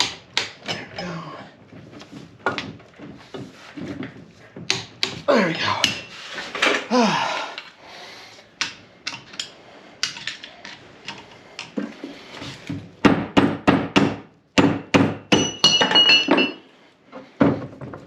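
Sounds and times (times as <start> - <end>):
hammer striking metal: 13.1 - 16.6.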